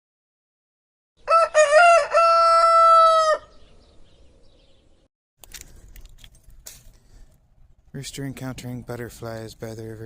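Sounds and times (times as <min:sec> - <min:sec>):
rooster crowing: 0:01.2 - 0:03.6.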